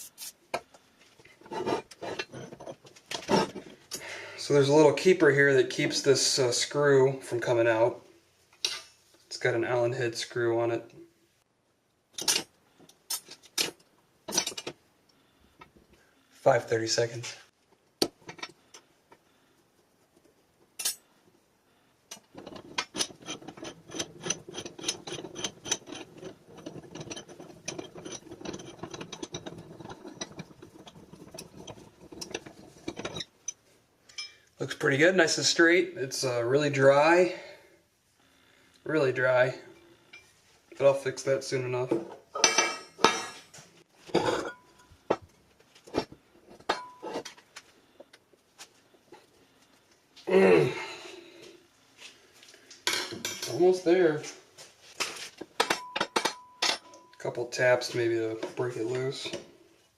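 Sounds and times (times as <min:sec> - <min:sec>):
metal tools clinking and knocking: 0:12.2 - 0:12.5, 0:13.1 - 0:14.8, 0:20.8 - 0:21.1, 0:22.1 - 0:34.5, 0:42.0 - 0:45.3, 0:45.9 - 0:47.4, 0:55.5 - 0:57.2
vise screw clicking and rattling: 0:22.1 - 0:34.5.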